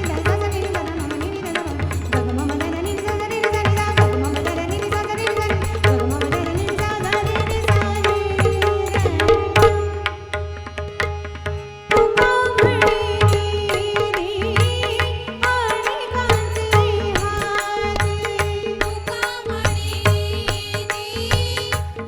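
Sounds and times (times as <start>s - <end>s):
tabla and pakhawaj drumming: 0.0s - 22.0s.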